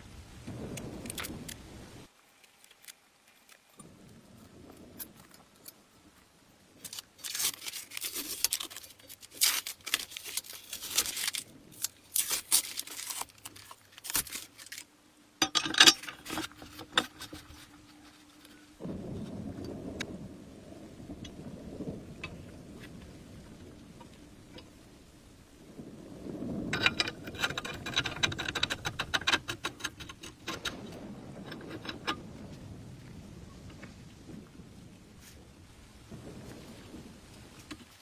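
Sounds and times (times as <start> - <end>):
faint steady hum: 0.0 - 38.0
metal parts and tools clinking: 15.4 - 18.6, 26.7 - 32.2.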